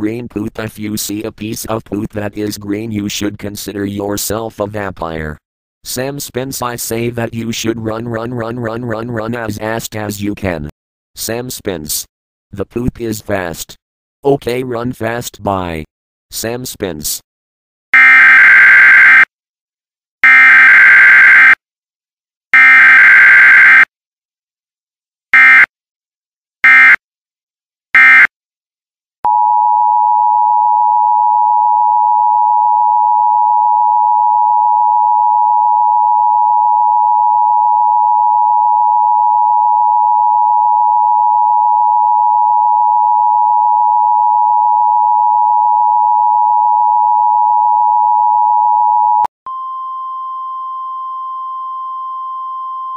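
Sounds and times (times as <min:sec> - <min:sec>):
two-tone attention signal: 0:26.6 - 0:27.0, 0:28.0 - 0:28.3.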